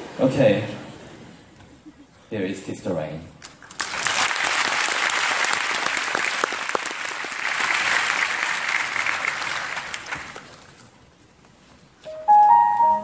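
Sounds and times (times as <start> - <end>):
audience applauding: 3.4 - 10.8.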